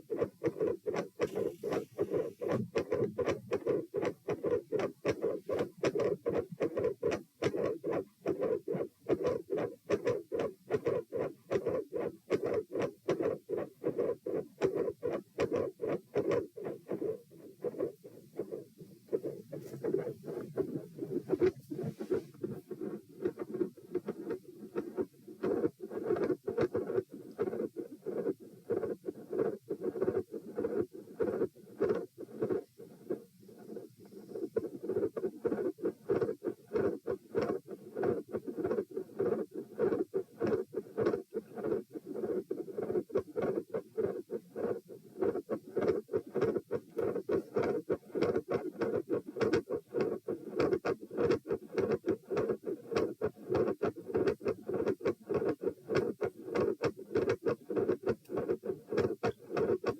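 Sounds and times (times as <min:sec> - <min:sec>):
heart murmur: 0:00.0 - 0:28.4
heartbeat through stethoscope: 0:00.0 - 0:59.9.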